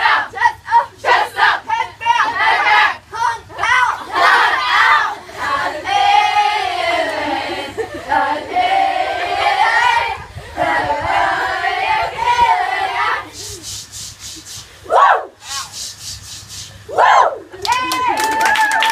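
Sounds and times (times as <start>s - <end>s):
young people chanting together: 0.0s - 13.3s.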